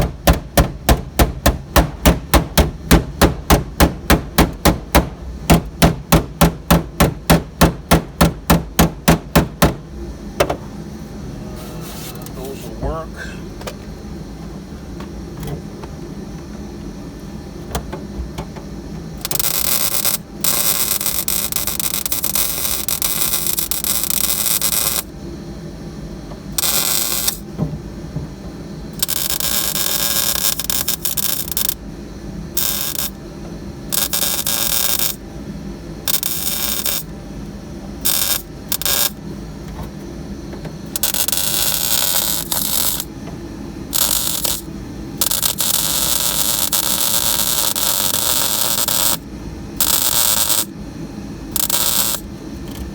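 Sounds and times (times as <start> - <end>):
welding arc crackling: 19.2 - 25.1, 26.6 - 27.4, 29.0 - 31.8, 32.6 - 33.2, 33.9 - 35.2, 36.1 - 37.1, 38.0 - 39.2, 40.9 - 43.1, 43.9 - 49.2, 49.8 - 50.7, 51.6 - 52.3.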